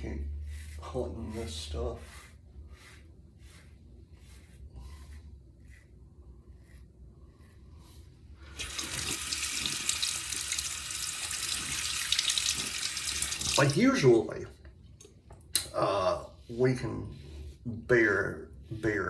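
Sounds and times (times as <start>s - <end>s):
faint rubbing strokes: 0.0s - 14.2s, 15.9s - 19.0s
tap water running into sink: 8.6s - 13.8s.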